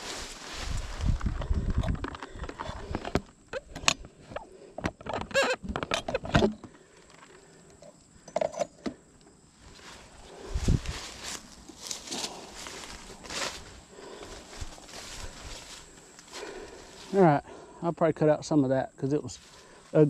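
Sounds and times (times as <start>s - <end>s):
footsteps rustling through weeds: 0.0s - 1.6s, 9.6s - 17.3s, 19.3s - 20.0s.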